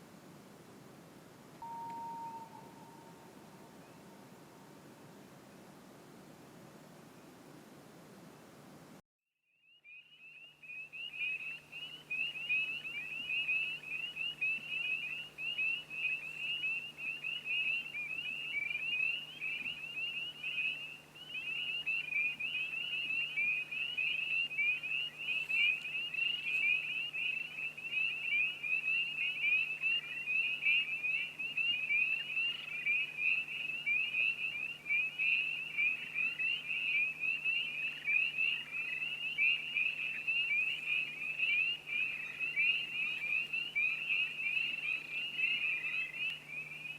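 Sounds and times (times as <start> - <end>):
frog chorus peeping: 9.9 - 46.9.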